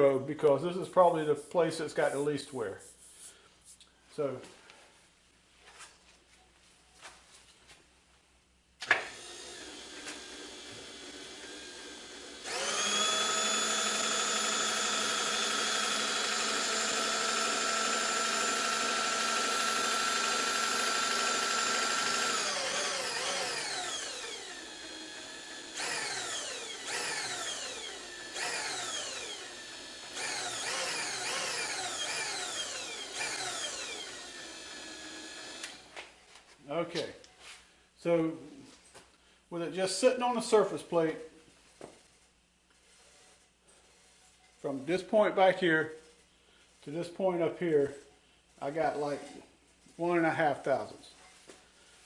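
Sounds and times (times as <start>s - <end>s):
small electric motor whining: 9.1s - 35.9s.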